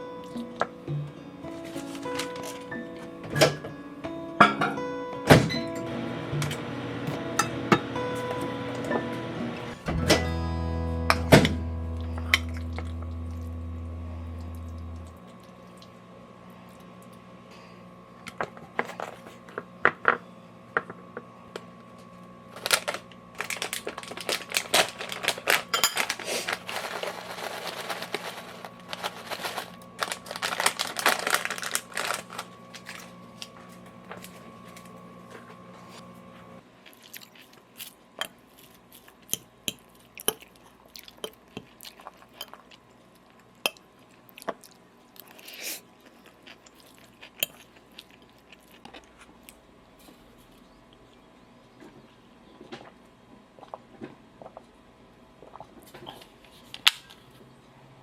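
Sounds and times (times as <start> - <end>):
low appliance hum: 0.0 - 58.0
crunching and crinkling: 22.5 - 51.2.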